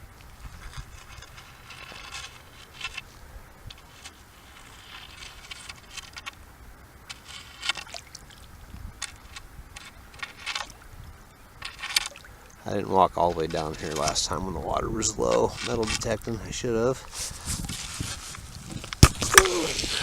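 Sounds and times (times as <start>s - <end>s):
shallow water splashing: 11.5s - 14.4s.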